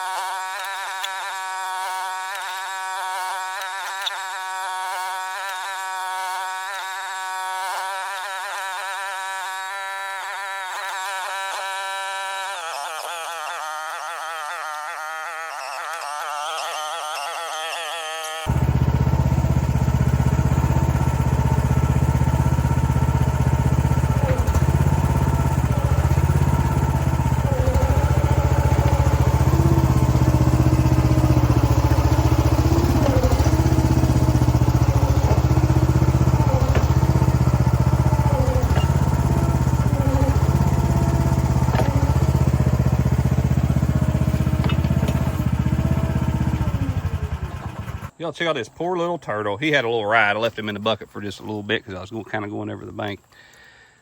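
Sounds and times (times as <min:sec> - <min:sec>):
hydraulic whine: 0:00.0 - 0:48.2
mini excavator engine running: 0:18.1 - 0:48.2.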